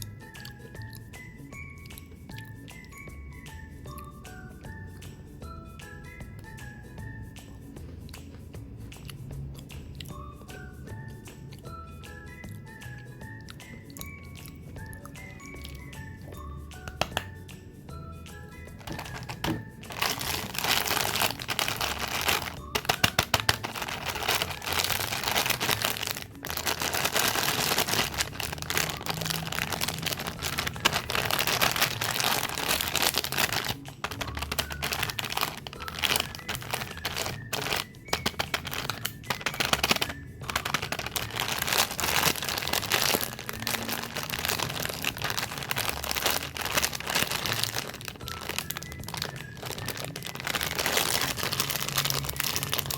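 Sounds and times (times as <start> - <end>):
plastic wrappers crinkling: 16.9 - 17.3, 18.8 - 52.9.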